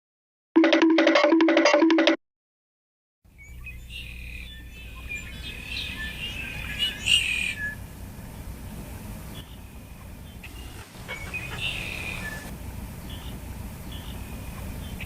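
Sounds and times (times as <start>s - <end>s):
birds chirping: 3.3s - 15.0s.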